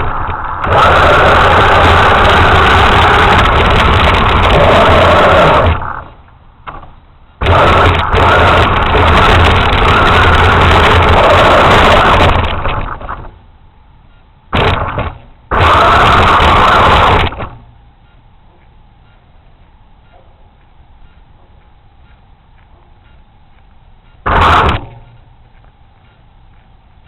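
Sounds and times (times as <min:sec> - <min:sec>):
toy truck motor running: 0:07.4 - 0:13.0.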